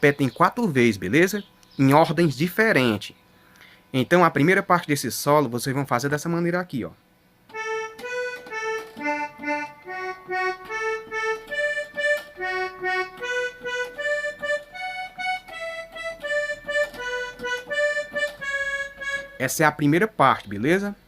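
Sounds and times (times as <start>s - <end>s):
keyboard accordion melody: 7.4s - 20.0s.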